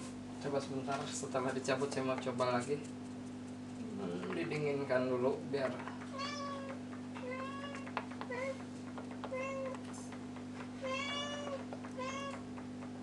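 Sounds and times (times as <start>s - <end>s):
low electrical hum: 0.0s - 13.0s
cat meowing: 6.2s - 8.6s, 9.3s - 9.8s, 10.8s - 12.4s.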